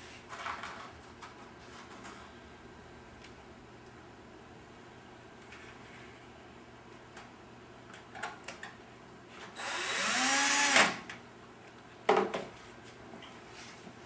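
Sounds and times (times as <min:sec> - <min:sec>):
electric screwdriver motor: 0:09.6 - 0:11.0.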